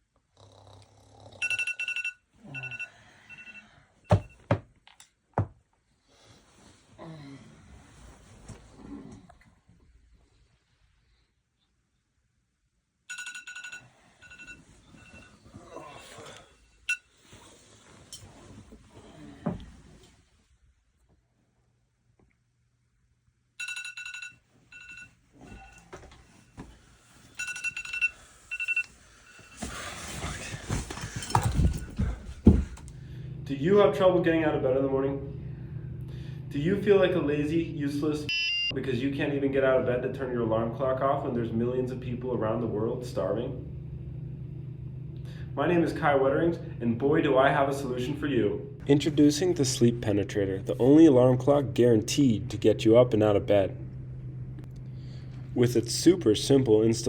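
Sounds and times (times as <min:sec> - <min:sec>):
alarm clock beeping: 0:01.4 - 0:04.4, 0:13.1 - 0:15.4, 0:23.6 - 0:26.0, 0:27.3 - 0:30.0, 0:38.3 - 0:38.8
knocks: 0:04.1 - 0:04.7
rustling: 0:28.4 - 0:33.0.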